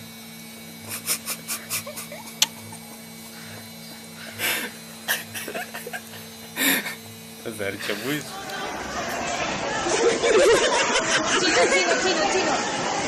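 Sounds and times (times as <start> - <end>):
child breathing huffs: 4.2 - 4.8.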